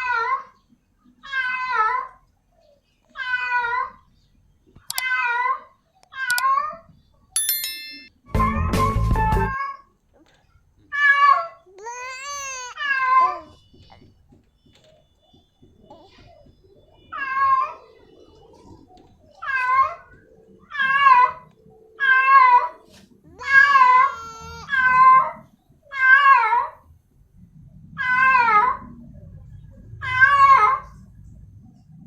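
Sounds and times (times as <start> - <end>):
cat meowing: 11.0 - 13.6, 23.3 - 26.4.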